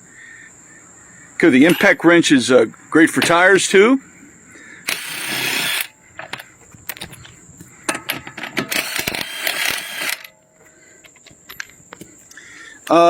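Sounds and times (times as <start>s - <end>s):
impact wrench rattling: 1.6s - 2.0s, 4.9s - 11.7s
handling clicks and knocks: 1.6s - 2.1s, 6.2s - 12.4s.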